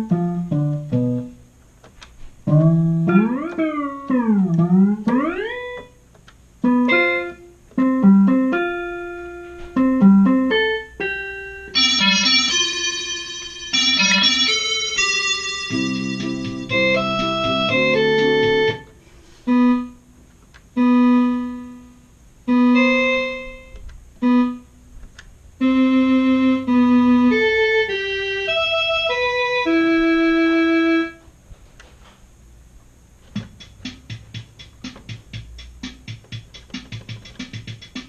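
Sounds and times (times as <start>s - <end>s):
keyboard notes through amplifier: 0.0s - 31.3s, 33.3s - 38.0s
fast percussive rhythm pattern: 15.6s - 18.9s, 33.3s - 38.0s.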